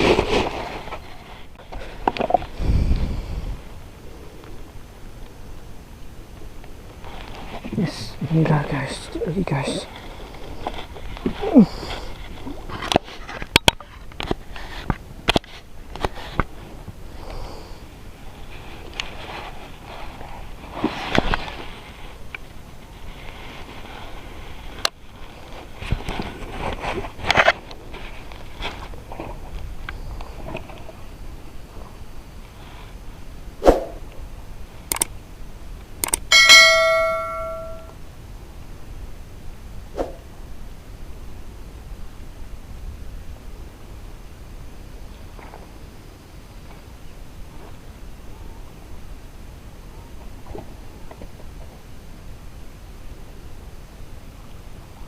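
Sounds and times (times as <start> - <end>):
sharp clicks: 34.9 - 35.1, 36.0 - 36.3
metal object ringing: 36.3 - 37.9.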